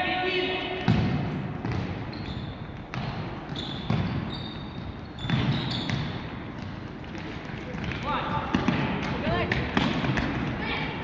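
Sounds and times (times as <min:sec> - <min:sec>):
football thuds echoing in hall: 0:00.0 - 0:11.0
short high squeaks: 0:03.5 - 0:06.0.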